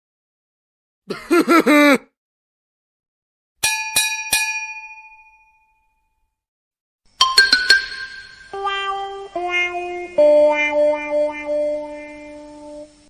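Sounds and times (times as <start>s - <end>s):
small metal bell ringing: 3.6s - 6.3s, 7.2s - 8.5s.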